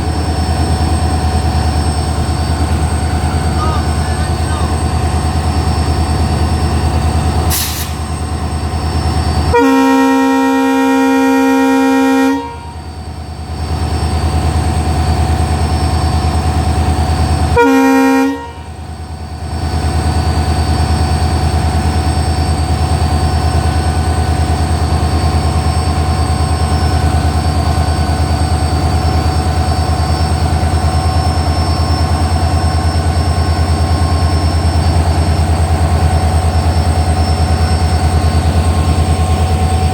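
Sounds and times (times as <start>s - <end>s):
diesel engine drone: 0.0s - 39.9s
locomotive horn blasts: 9.5s - 12.8s, 17.5s - 18.8s.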